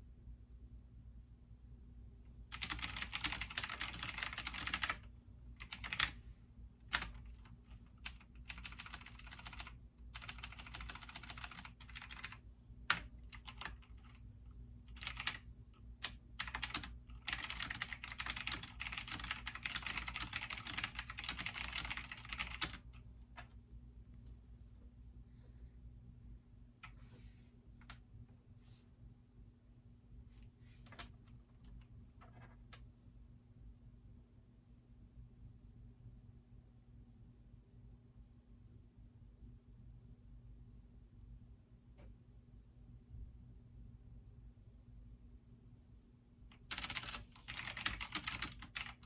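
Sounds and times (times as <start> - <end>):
keyboard typing: 2.5 - 6.2, 6.9 - 14.2, 14.9 - 23.6, 46.5 - 49.0.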